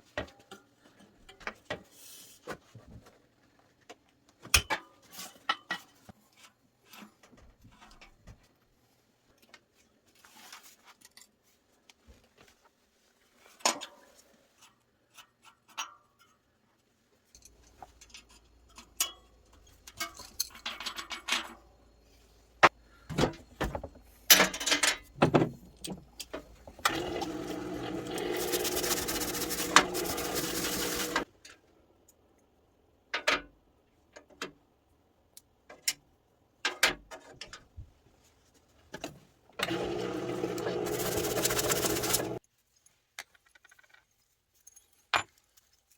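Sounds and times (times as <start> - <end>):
machine whir: 26.9 - 31.2, 39.6 - 42.4.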